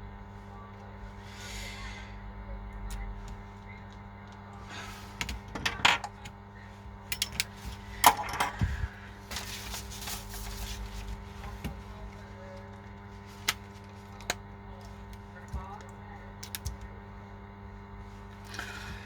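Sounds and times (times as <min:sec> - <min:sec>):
steady electrical hum: 0:00.0 - 0:19.0
small tools clicking and tapping: 0:07.1 - 0:08.6.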